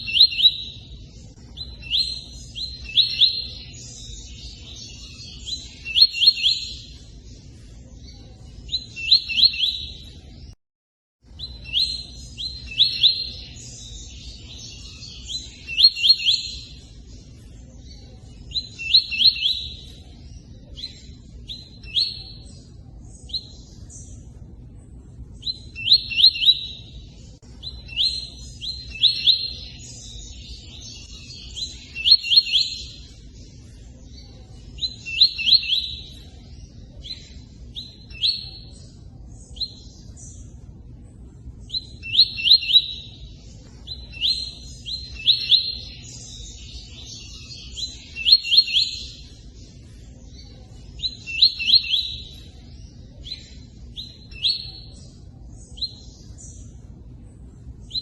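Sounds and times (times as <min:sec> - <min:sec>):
bird singing sharp notes: 0:00.0 - 0:10.5.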